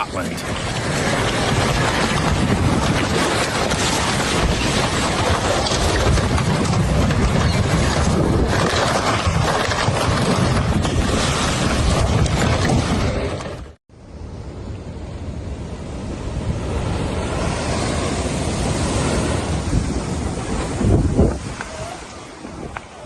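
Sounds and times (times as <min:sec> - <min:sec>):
floodwater rushing: 0:00.0 - 0:02.1
wind buffeting microphone: 0:00.0 - 0:13.6, 0:16.1 - 0:23.0.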